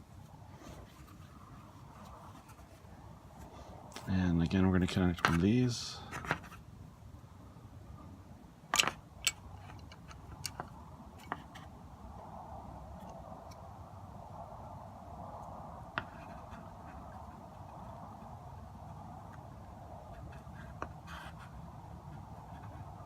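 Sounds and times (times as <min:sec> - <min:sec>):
faint steady hum: 0:00.0 - 0:23.0
small screws and parts clicking: 0:08.7 - 0:11.6.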